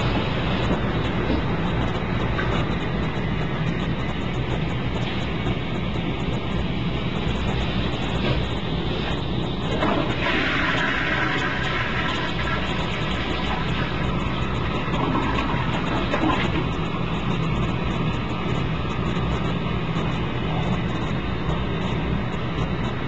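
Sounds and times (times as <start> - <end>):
toilet flushing and refilling: 9.1 - 17.1.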